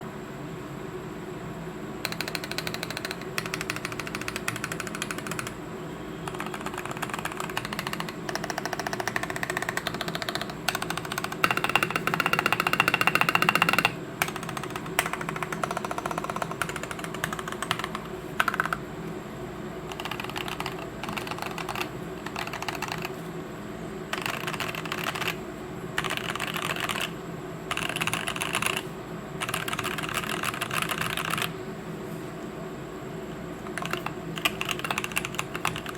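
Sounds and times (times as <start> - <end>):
fast typing on mechanical keyboard: 2.0 - 5.6, 6.2 - 18.8, 19.9 - 23.2, 24.1 - 25.4, 26.0 - 31.5, 33.6 - 35.9.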